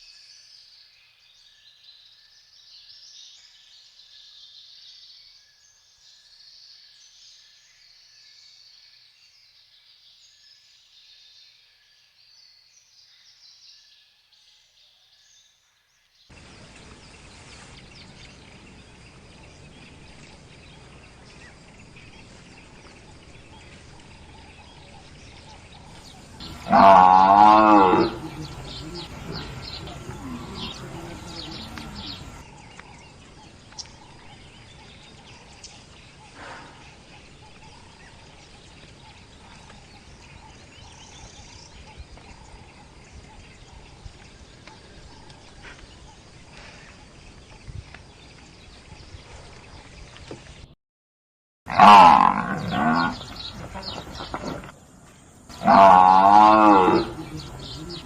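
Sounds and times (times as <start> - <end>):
water buffalo calling: 26.2 - 32.4, 51.7 - 54.7, 55.5 - 58.0.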